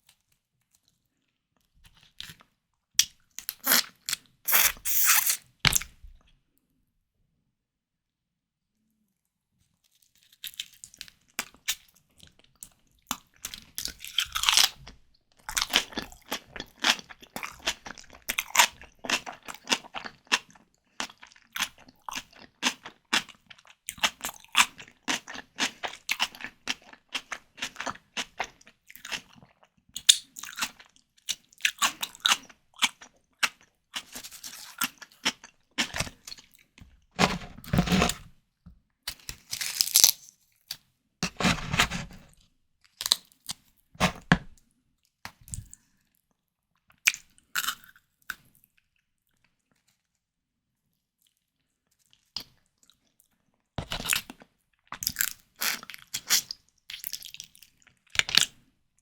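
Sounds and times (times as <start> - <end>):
wet crunchy chewing: 3.4 - 5.9, 13.1 - 14.8, 15.5 - 30.9, 31.6 - 38.3, 39.1 - 40.2, 41.2 - 42.4.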